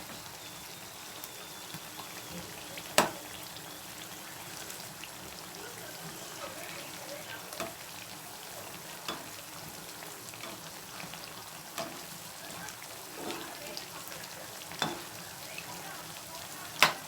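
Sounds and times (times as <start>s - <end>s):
bread deep-frying in hot oil: 0.0s - 17.0s
sharp taps in pan: 1.7s - 3.3s, 9.0s - 9.5s, 14.7s - 15.2s, 16.8s - 17.0s.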